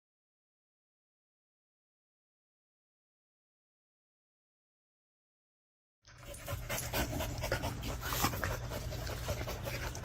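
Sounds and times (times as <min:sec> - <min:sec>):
dog panting: 0:06.1 - 0:10.0.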